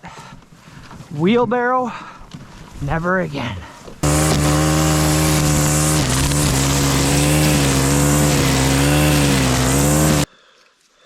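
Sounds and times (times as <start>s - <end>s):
motor engine running: 4.0s - 10.3s.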